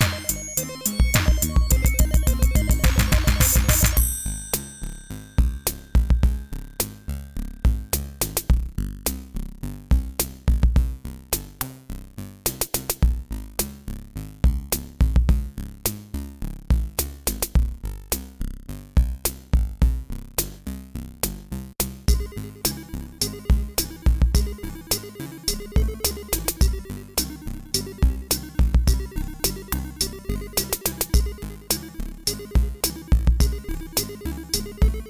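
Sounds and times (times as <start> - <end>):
electronic music with drum machine: 0.0 - 4.7, 5.4 - 8.7, 21.8 - 35.0.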